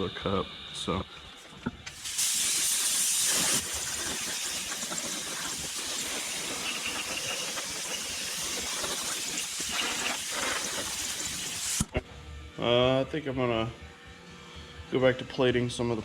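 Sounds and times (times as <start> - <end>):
paint spray gun hissing: 1.9 - 11.9.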